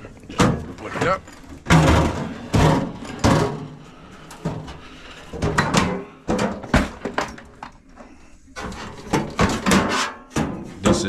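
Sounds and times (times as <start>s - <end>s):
sheet metal knocks and clanks: 0.3s - 3.8s, 8.6s - 11.0s.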